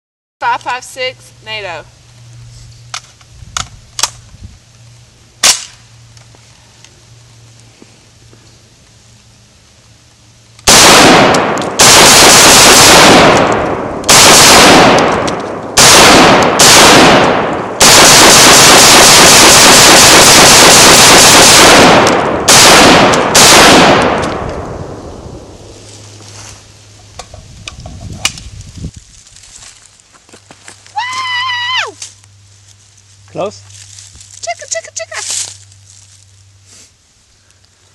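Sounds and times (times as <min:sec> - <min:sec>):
rifle gunshots: 0:10.6 - 0:24.7.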